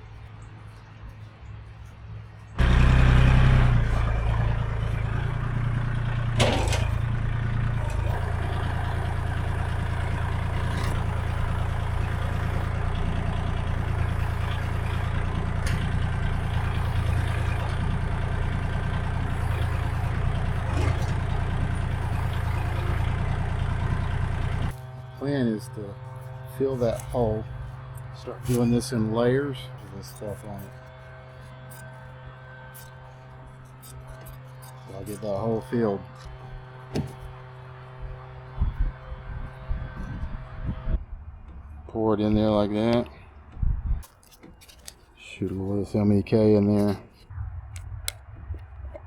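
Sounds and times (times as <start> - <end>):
engine starting and idling: 2.6 - 25.6
engine knock: 3.9 - 24.8.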